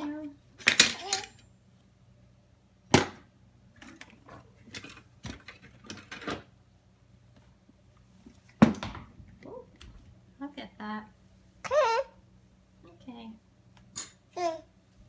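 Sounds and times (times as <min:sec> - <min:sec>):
metal cutlery clinking and rattling: 0:00.6 - 0:01.4.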